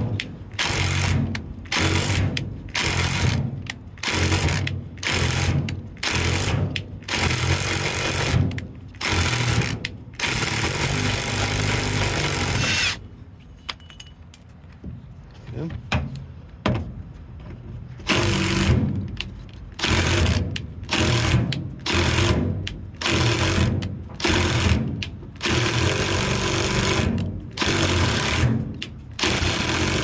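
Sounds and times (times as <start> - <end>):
power drill bursts: 0.6 - 3.4, 4.0 - 8.4, 9.0 - 13.0, 18.1 - 18.8, 19.8 - 22.4, 23.0 - 24.8, 25.4 - 28.5, 29.2 - 30.0.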